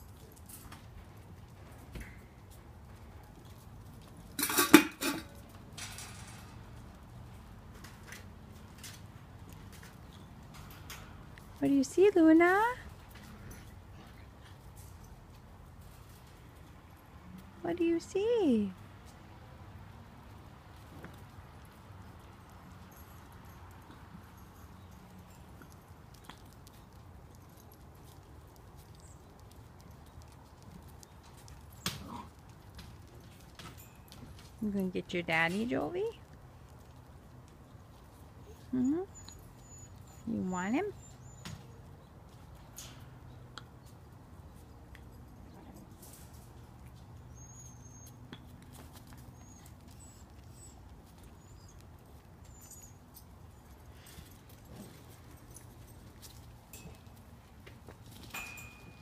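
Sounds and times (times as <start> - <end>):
puppy claws clicking and scratching: 0.0 - 11.6, 18.9 - 40.3, 41.0 - 59.0
small paws scuffling on hard surface: 0.0 - 59.0
puppies squeaking: 38.2 - 42.0, 47.2 - 55.9.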